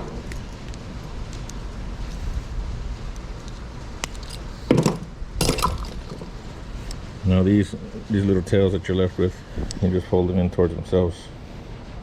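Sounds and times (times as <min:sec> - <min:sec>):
handling noise: 0:04.0 - 0:06.6.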